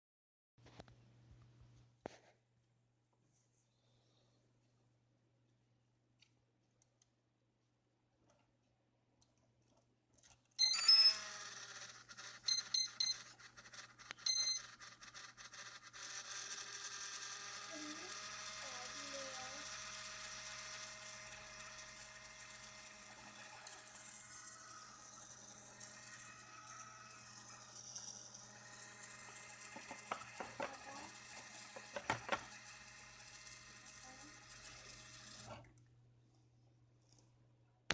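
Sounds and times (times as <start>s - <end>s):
gimbal motor buzzing and whining: 10.6s - 35.6s.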